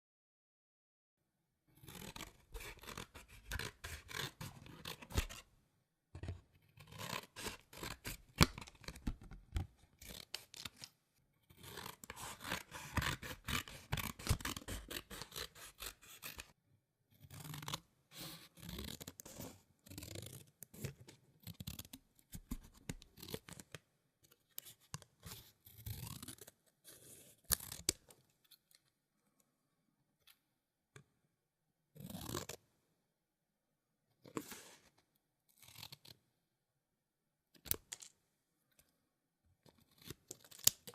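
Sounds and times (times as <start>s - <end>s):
scissors cutting paper: 1.8s - 5.5s, 6.2s - 10.9s, 11.5s - 16.5s, 39.7s - 40.9s.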